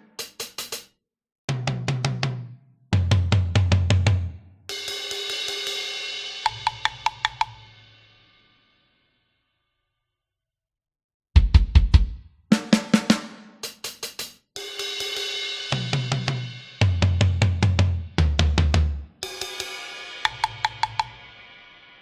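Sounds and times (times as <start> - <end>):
drum kit grooves and fills: 0.0 - 0.9, 1.5 - 8.4, 11.4 - 22.0.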